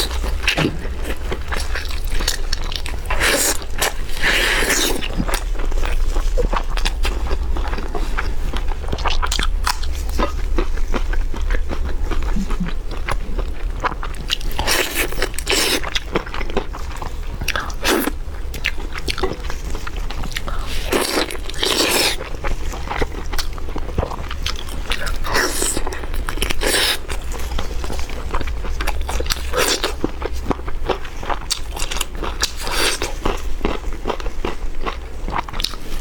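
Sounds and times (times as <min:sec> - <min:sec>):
crisp food crunching: 0:00.0 - 0:36.0
low hum: 0:05.3 - 0:14.6.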